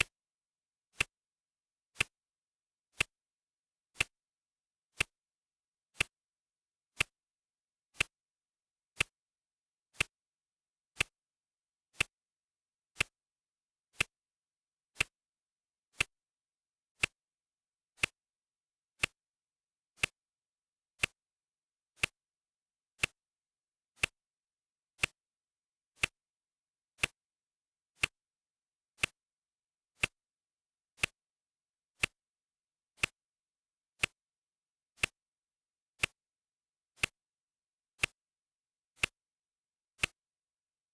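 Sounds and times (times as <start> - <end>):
clock ticking: 4.0 - 4.2, 7.0 - 7.2, 8.0 - 8.2, 9.0 - 9.2, 10.0 - 10.2, 11.0 - 11.2, 17.0 - 17.2, 37.0 - 37.2.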